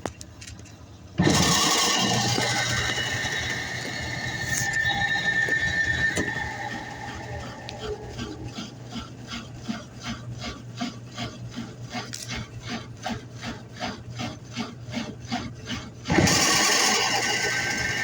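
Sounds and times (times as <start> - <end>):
washing machine rhythmic scraping: 0.9 - 18.0.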